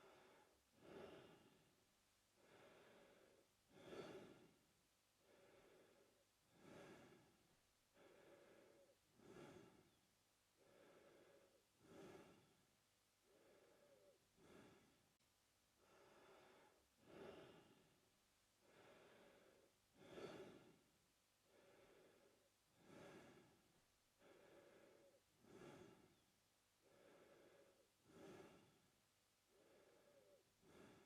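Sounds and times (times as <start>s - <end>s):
man breathing through mouth: 2.4s - 4.6s, 5.2s - 10.0s, 10.6s - 12.6s, 18.6s - 20.8s, 21.5s - 26.2s, 26.8s - 28.9s, 29.5s - 31.0s.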